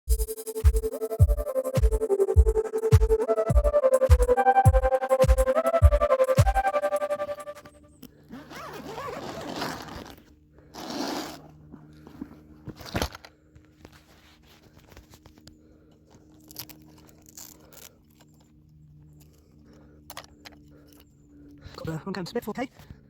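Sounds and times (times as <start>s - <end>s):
rustling and tearing: 8.6s - 13.2s.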